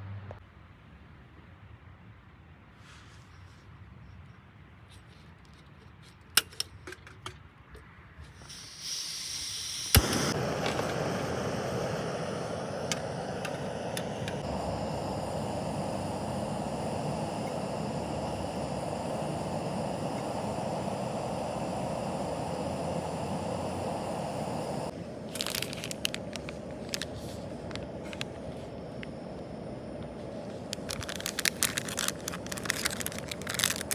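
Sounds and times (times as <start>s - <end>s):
gas hissing: 8.2s - 33.9s
gas stove flame rushing: 8.2s - 33.9s
igniter click: 8.5s - 24.9s.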